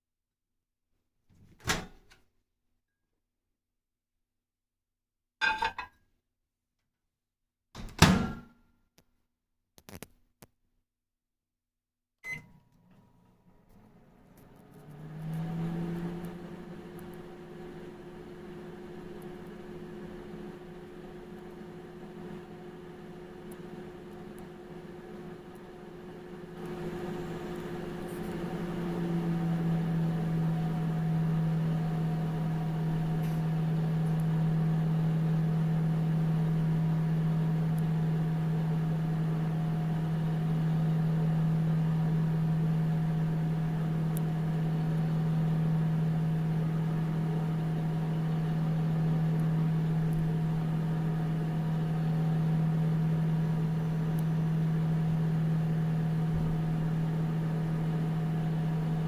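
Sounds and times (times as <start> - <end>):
microwave oven humming: 12.2 - 59.0.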